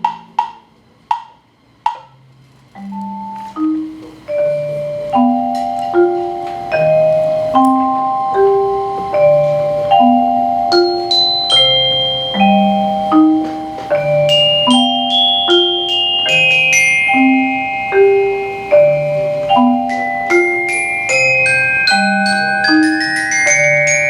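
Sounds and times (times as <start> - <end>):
glockenspiel notes: 2.8 - 24.0
low ringing marimba notes: 2.8 - 24.0
long-held higher tones: 3.4 - 24.0.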